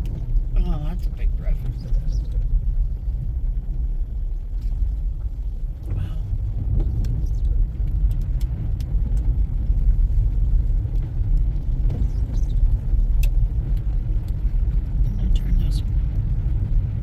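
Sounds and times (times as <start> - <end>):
road and wind noise in car: 0.0 - 17.0.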